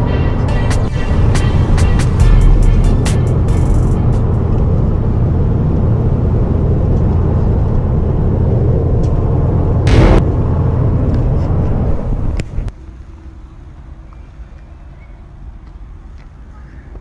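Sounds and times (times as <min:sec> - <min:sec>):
car engine and road rumble: 0:00.0 - 0:13.1.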